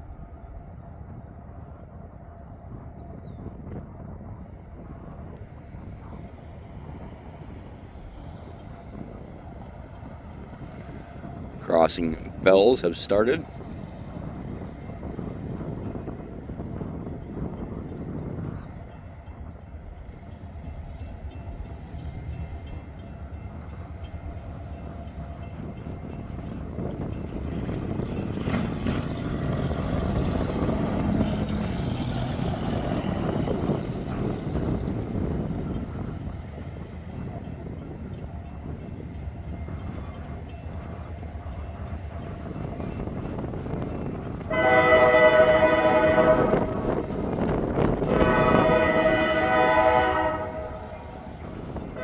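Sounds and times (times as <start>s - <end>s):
freight train rumble: 0.0s - 52.0s
locomotive air horn chord: 44.5s - 46.8s, 48.1s - 51.2s.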